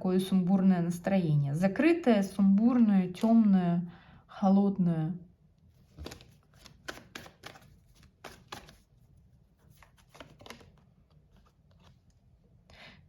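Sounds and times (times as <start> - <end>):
soft handling clicks and rustles: 5.6 - 12.4.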